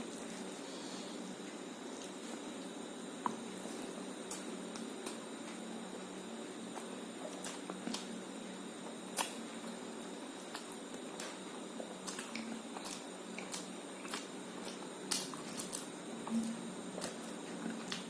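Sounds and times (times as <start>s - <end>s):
wet chewing: 3.2s - 8.2s, 8.8s - 18.0s.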